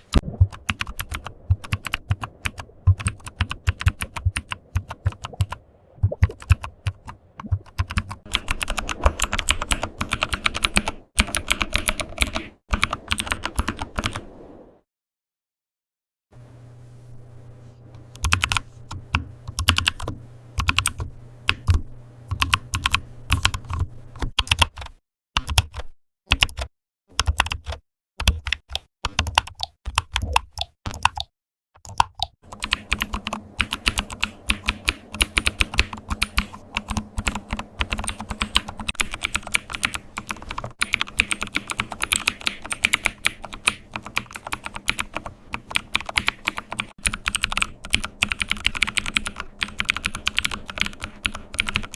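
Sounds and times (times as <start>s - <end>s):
keyboard keys clicking: 0.0s - 14.2s, 18.1s - 51.9s
faint low hum: 16.4s - 24.3s.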